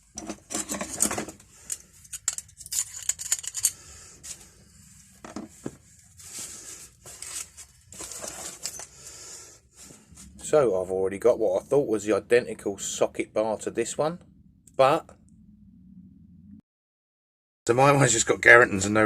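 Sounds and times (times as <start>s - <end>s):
steel sockets clinking: 0.5s - 3.8s
packaging rustling: 6.3s - 8.8s.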